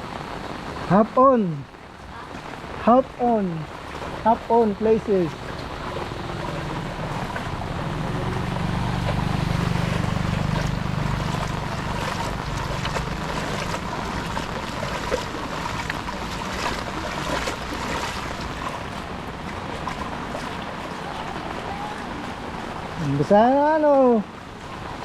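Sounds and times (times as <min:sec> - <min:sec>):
wash of water: 0:00.0 - 0:25.0
vehicle engine rumble: 0:04.4 - 0:23.0.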